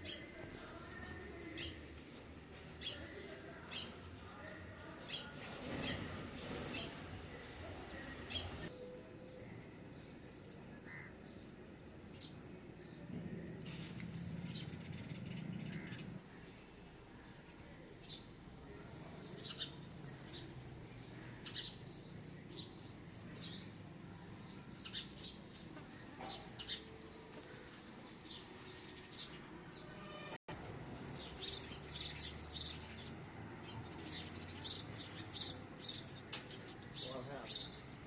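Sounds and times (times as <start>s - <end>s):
small birds chirping: 0.0s - 38.0s.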